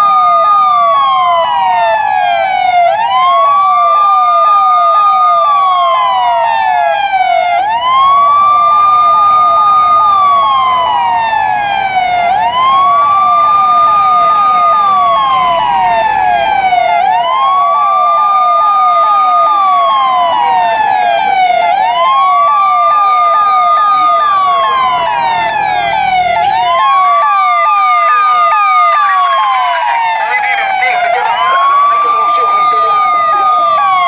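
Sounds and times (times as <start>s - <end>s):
police siren wail: 0.0s - 34.0s
rapid falling siren tone: 7.9s - 34.0s.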